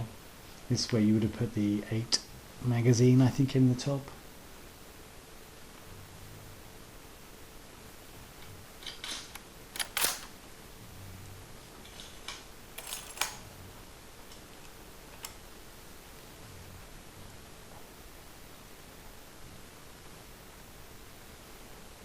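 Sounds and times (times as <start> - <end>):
rifle bolt rattling and clacking: 9.0 - 10.4, 12.8 - 13.4.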